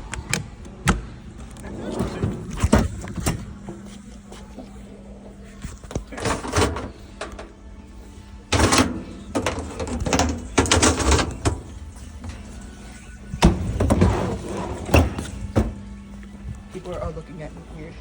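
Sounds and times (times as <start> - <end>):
faint background music: 0.0 - 18.0
clunks and rattles: 5.7 - 7.6, 8.5 - 16.7.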